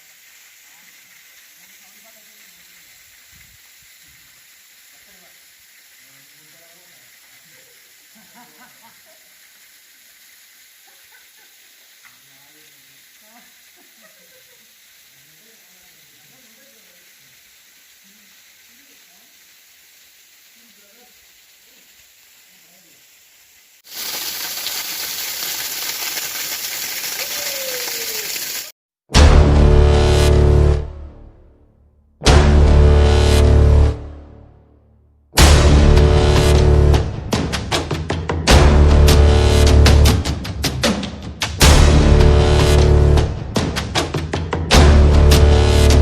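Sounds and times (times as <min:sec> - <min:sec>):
waterfall rushing: 0:23.8 - 0:28.7
background music: 0:35.4 - 0:46.0.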